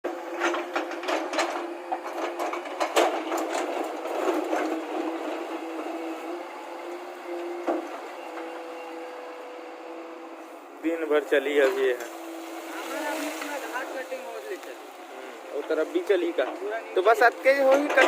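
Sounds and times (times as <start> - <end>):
rattling and knocking: 17.5 - 18.0.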